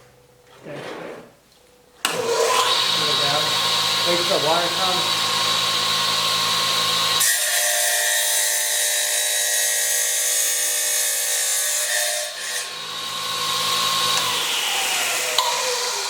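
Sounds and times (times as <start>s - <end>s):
wet tile saw whining: 2.1s - 8.9s, 11.8s - 16.0s.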